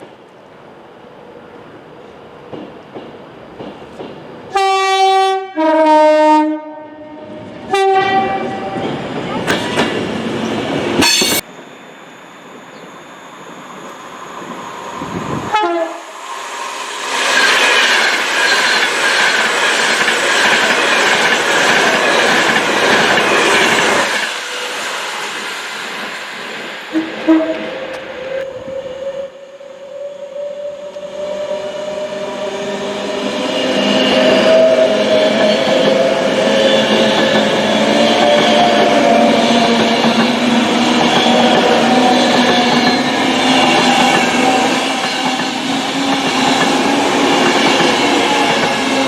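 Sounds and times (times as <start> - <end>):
train passing at speed: 0.0 - 49.0
two-tone train horn: 4.5 - 8.8, 11.0 - 11.4, 15.4 - 16.1, 26.9 - 27.8.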